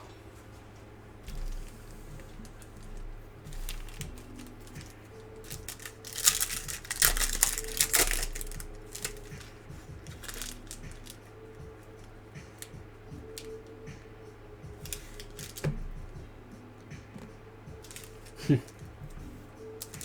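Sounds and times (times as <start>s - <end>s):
cards rustling and sliding: 1.3s - 11.3s, 14.8s - 15.9s, 17.2s - 18.8s, 19.7s - 20.0s
cards clicking and tapping: 1.3s - 20.0s.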